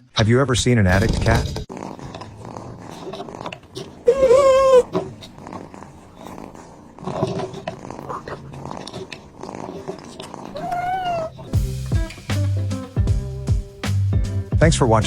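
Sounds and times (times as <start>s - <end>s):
animal wavering cry: 1.7s - 11.6s
quiet low animal sounds: 1.7s - 11.6s.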